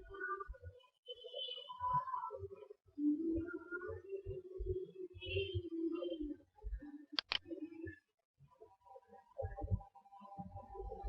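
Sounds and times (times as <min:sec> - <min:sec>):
background music with low beat: 0:03.4 - 0:11.0.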